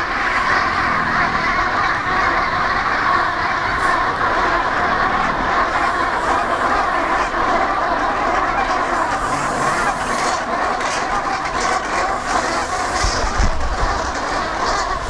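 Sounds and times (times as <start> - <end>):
dense steady noise: 0.0 - 15.0.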